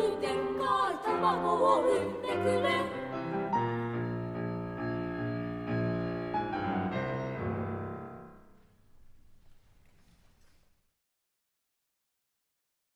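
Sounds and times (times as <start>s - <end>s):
piano chords: 0.0s - 9.9s.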